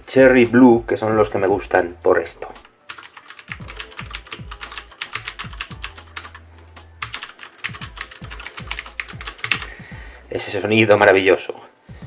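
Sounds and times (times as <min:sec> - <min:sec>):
clicky mechanical keyboard typing: 0:02.9 - 0:09.7.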